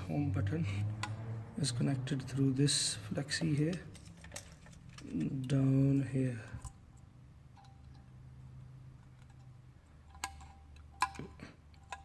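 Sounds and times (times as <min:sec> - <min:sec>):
low steady hum: 0:00.0 - 0:12.0
small tools clicking and tapping: 0:00.9 - 0:01.3, 0:03.4 - 0:05.6, 0:09.0 - 0:12.0.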